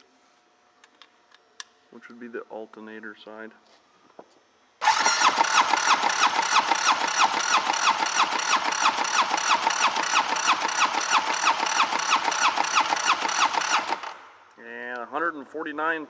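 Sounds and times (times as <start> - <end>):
starter motor cranking engine: 4.8 - 14.2.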